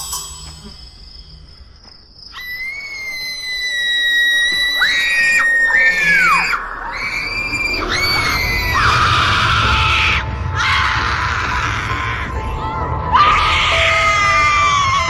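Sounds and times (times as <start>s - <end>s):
high-pitched screams: 2.3s - 15.0s
low rumble: 6.2s - 15.0s.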